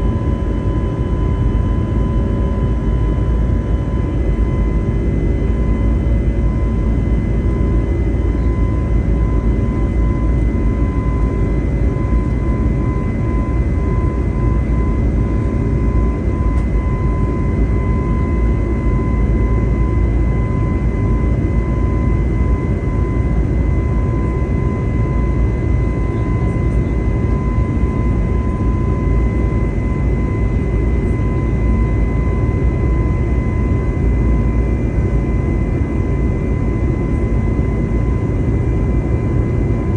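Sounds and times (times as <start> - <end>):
faint steady whine: 0.0 - 39.9
jet engine and airflow drone: 0.0 - 39.9.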